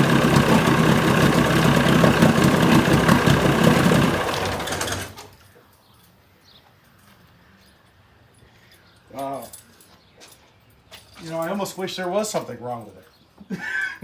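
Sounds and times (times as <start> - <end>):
outboard motor running: 0.0 - 5.3.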